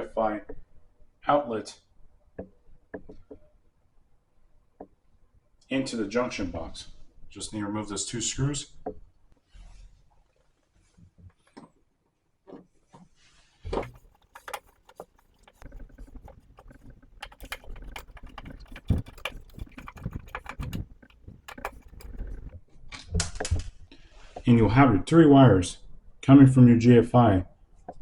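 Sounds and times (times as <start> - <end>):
screwdriver clicks and scrapes: 13.8 - 22.6.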